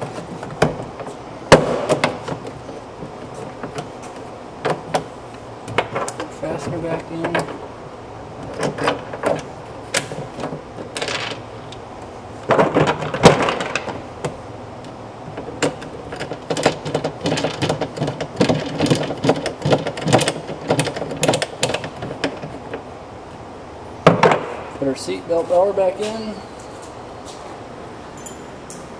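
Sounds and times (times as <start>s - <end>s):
hand tools clicking and clattering: 15.3s - 22.8s.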